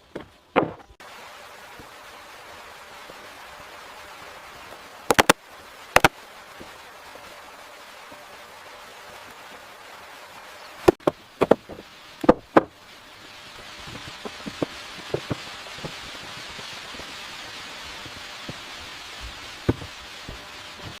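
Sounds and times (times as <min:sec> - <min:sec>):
steady hiss: 0:00.0 - 0:21.0
sharp knocks on wood: 0:05.1 - 0:05.4.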